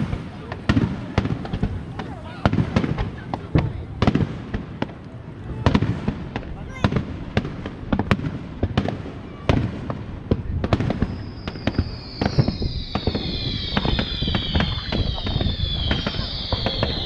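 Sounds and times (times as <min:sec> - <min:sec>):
descending firework whistles: 0:00.0 - 0:03.7, 0:09.2 - 0:17.0
fireworks bursting: 0:00.0 - 0:17.0.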